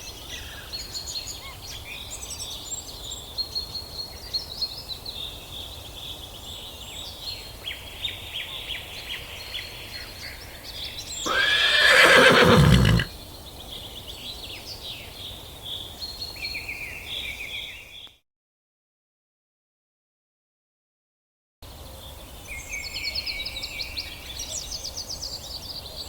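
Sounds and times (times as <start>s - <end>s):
birds chirping: 11.2s - 13.1s
horse whinnying: 11.3s - 13.1s.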